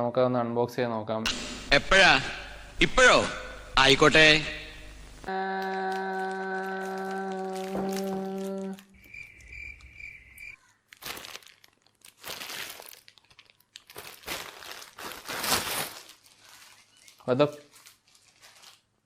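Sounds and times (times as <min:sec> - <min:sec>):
steady held tone: 0:01.3 - 0:05.6
cardboard packaging tearing: 0:05.6 - 0:09.0, 0:10.9 - 0:19.0
faint pulsing chirp: 0:09.0 - 0:10.6.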